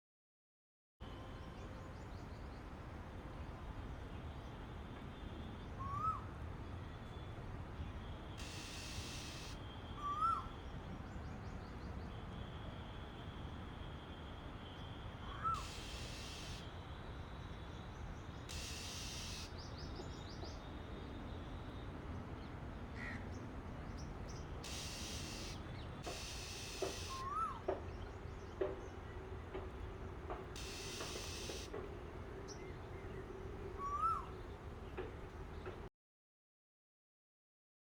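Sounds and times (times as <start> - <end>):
harsh raspy bird calls: 8.4 - 9.6, 18.5 - 19.6, 24.6 - 27.6, 30.6 - 31.7
faint high bird chips: 24.6 - 27.6, 30.6 - 31.7
koel call: 24.7 - 27.5, 30.6 - 31.7.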